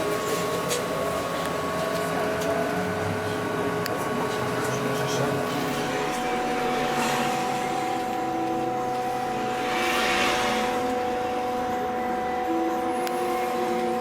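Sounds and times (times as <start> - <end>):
road and tyre noise: 0.0 - 14.0
electric drive whine: 5.1 - 14.0
rushing noise: 5.8 - 12.6.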